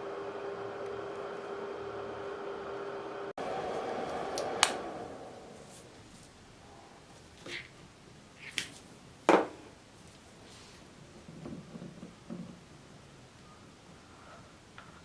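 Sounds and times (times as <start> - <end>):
soft rustling: 9.9 - 11.4.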